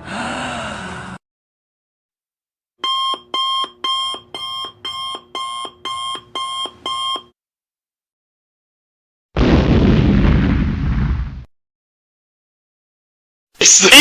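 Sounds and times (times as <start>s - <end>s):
alarm clock beeping: 2.8s - 7.3s.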